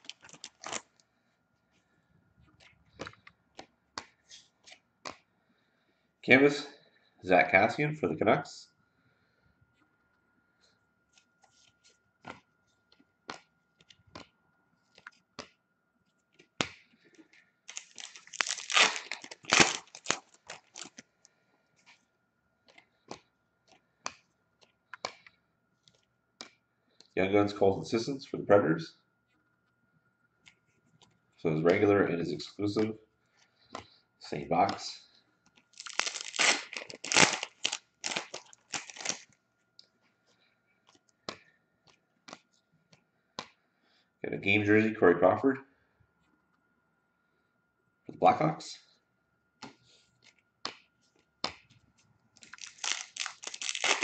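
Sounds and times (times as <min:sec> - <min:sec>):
foil wrapper tearing: 0:00.0 - 0:01.0, 0:17.7 - 0:21.0, 0:35.7 - 0:39.3, 0:52.4 - 0:54.0
cards clicking and snapping: 0:22.6 - 0:26.6, 0:40.9 - 0:42.5, 0:49.6 - 0:51.8, 0:52.4 - 0:54.0.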